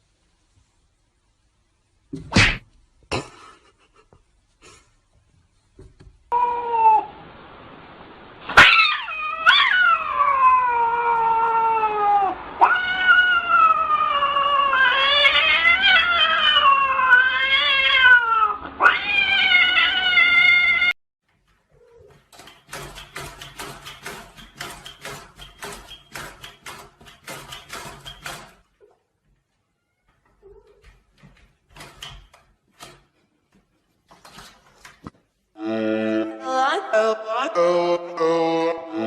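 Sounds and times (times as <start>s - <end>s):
cat yowling: 6.3s - 7.1s, 8.6s - 21.0s.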